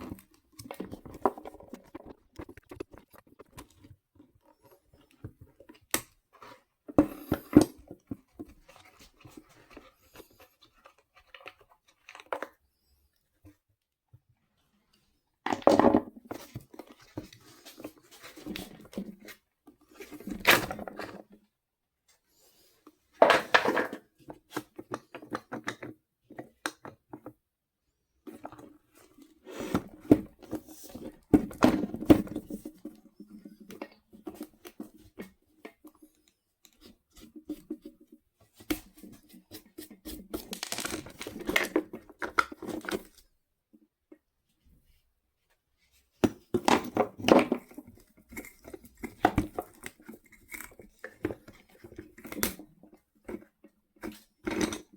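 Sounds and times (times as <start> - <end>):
plastic and metal parts clicking: 40.4 - 41.8.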